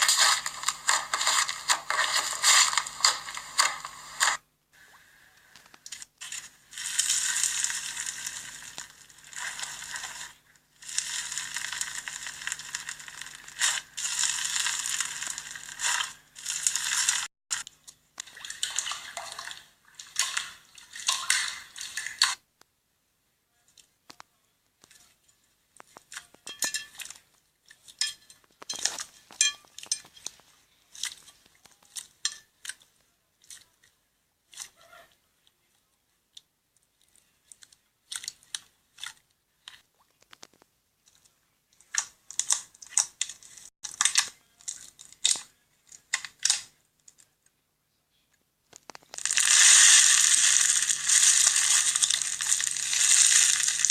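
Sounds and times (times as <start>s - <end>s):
slime squished crackling and popping: 0.0s - 4.4s, 5.6s - 22.4s, 41.8s - 46.7s, 48.8s - 53.9s.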